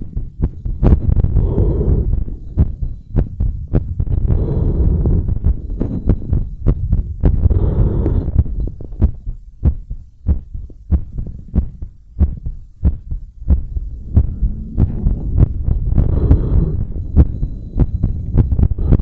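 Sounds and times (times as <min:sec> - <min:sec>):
heart beating fast: 0:00.0 - 0:19.0
soft rushing noise: 0:12.8 - 0:18.9.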